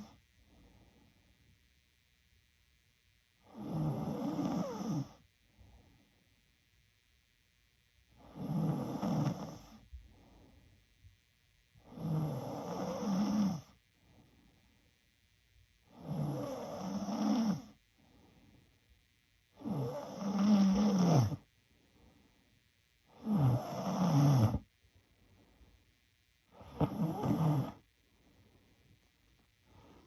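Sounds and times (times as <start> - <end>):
woman snoring: 0.0 - 0.2, 3.4 - 5.2, 8.2 - 9.8, 11.8 - 13.8, 15.9 - 17.8, 19.6 - 21.5, 23.1 - 24.7, 26.5 - 27.8
faint breaths: 0.0 - 1.7, 3.3 - 6.7, 8.1 - 30.0.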